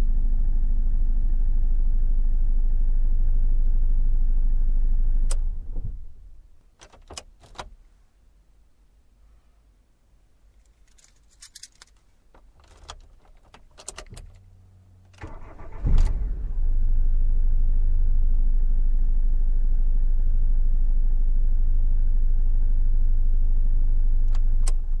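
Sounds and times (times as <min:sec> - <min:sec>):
key jingles and clicks: 0:10.9 - 0:12.0
car engine cranking and idling: 0:12.4 - 0:25.0.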